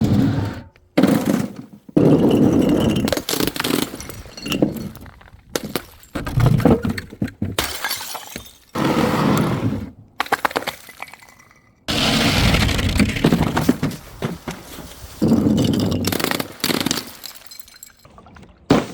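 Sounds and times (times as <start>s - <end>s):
glass bottles smashing: 2.0s - 6.4s, 7.6s - 8.8s, 10.2s - 11.8s, 15.0s - 18.1s
glass shards clinking: 15.2s - 18.1s.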